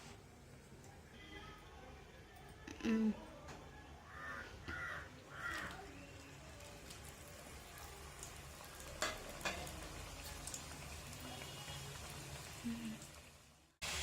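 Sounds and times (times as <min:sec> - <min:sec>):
dough deep-frying in oil: 0:03.6 - 0:14.0.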